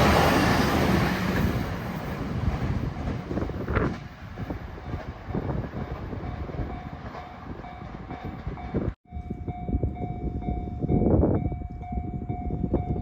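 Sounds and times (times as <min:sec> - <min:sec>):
train wheels rumbling over rail joints: 0:00.0 - 0:09.0.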